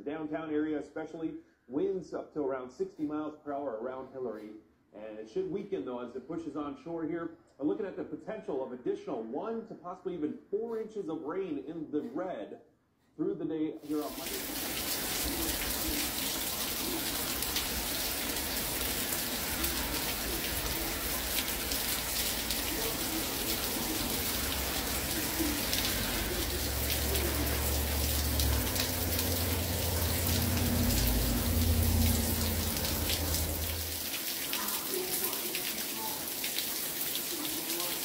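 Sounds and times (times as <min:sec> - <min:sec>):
raindrops hitting close by: 0:13.8 - 0:38.0
steady rain falling: 0:13.8 - 0:38.0.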